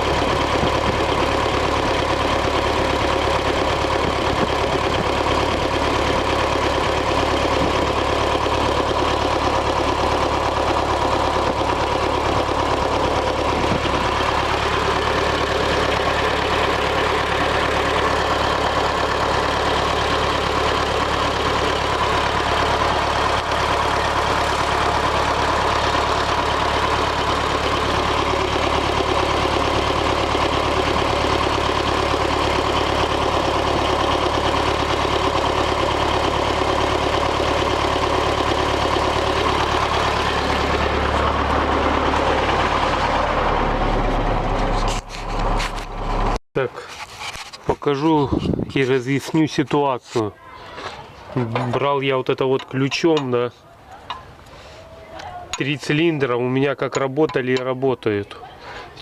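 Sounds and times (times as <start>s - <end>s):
diesel engine idling with misfire: 0.0s - 59.0s.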